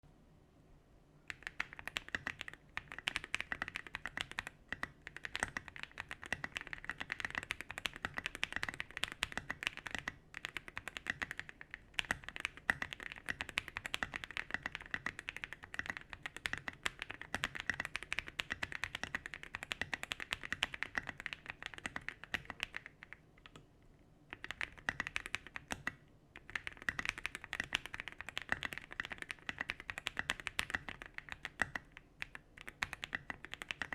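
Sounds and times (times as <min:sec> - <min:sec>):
mechanical keyboard typing: 0:01.3 - 0:23.6, 0:24.3 - 0:33.9.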